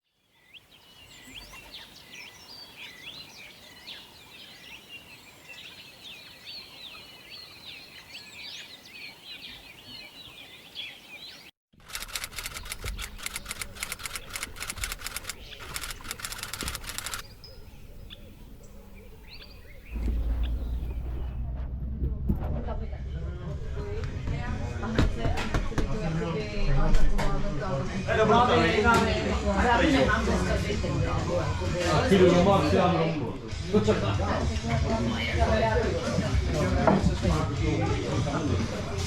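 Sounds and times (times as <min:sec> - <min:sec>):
birds chirping and singing: 0:00.2 - 0:21.4
fast run of clicks: 0:11.8 - 0:17.6
loud low rumble: 0:19.8 - 0:23.8.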